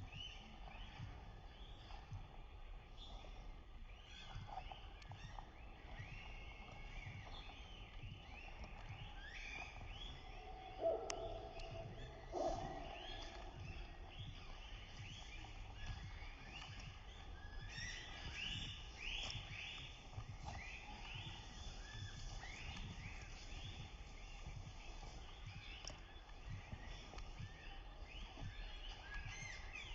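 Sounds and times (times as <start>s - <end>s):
small birds chirping: 0.0s - 29.9s
larger bird calling: 10.2s - 14.0s.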